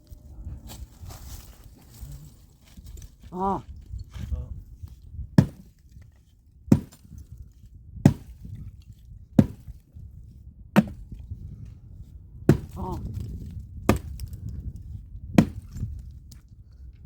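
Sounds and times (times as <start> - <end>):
axe chopping firewood: 5.4 - 5.9, 6.7 - 7.2, 8.0 - 8.7, 9.4 - 9.8, 10.8 - 11.2, 12.5 - 16.0.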